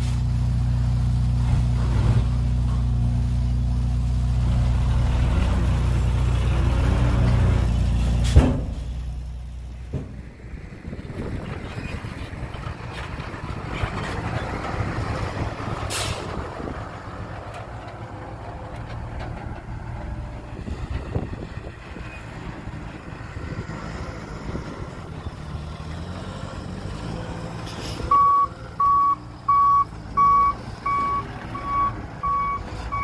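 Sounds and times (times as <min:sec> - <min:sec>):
diesel truck engine running: 0:00.0 - 0:33.0
short hiss of air: 0:15.8 - 0:16.4.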